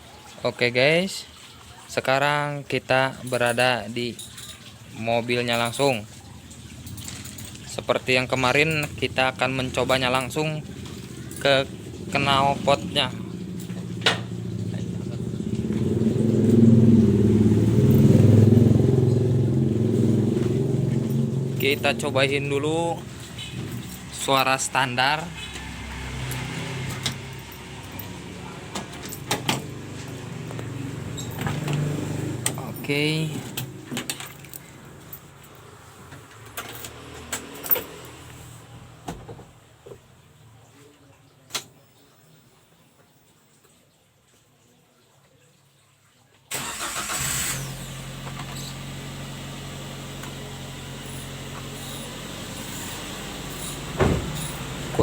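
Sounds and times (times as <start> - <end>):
car exhaust pulsing: 8.5 - 23.9.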